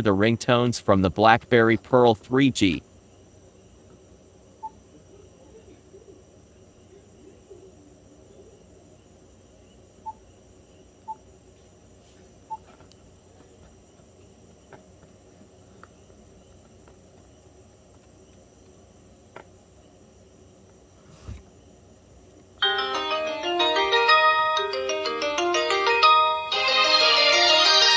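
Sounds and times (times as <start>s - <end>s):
faint background noise: 0.0s - 27.9s
thin high tone: 22.6s - 27.9s.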